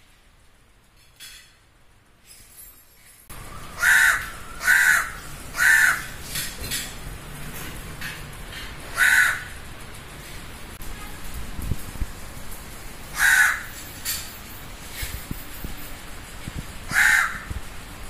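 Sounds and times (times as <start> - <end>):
steady background hiss: 0.0 - 18.0
crow cawing: 3.7 - 6.2, 8.9 - 9.6, 13.1 - 13.8, 16.9 - 17.5.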